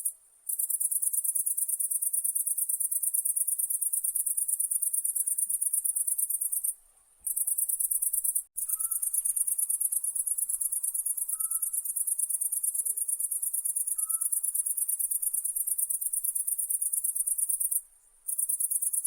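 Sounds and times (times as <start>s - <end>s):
insect trilling: 7.3s - 19.0s
faint short chirps: 8.6s - 11.9s, 13.8s - 14.6s.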